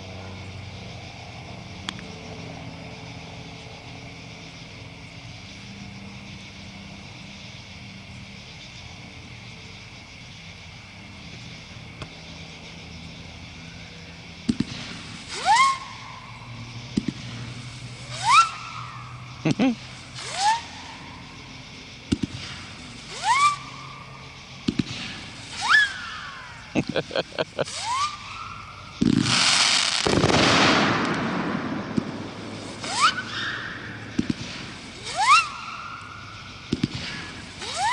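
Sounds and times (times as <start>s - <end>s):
fireworks launch thumps: 14.4s - 15.7s, 16.9s - 17.4s, 22.1s - 23.6s, 24.6s - 25.8s, 29.0s - 33.3s, 34.0s - 35.2s, 36.7s - 37.9s
rising firework whistle: 14.5s - 37.9s.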